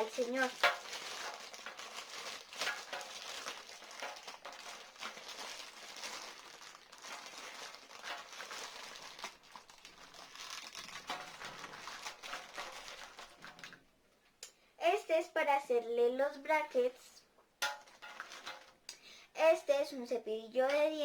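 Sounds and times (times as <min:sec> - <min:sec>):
plastic packaging crinkling: 0:00.0 - 0:13.8, 0:17.8 - 0:18.8.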